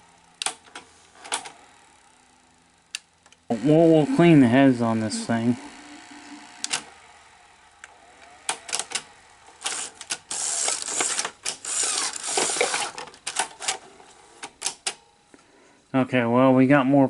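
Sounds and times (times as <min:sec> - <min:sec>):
sharp mechanical clicks: 0:00.4 - 0:01.6, 0:06.6 - 0:06.9, 0:07.8 - 0:13.8
mechanism scraping and whirring: 0:03.5 - 0:14.3.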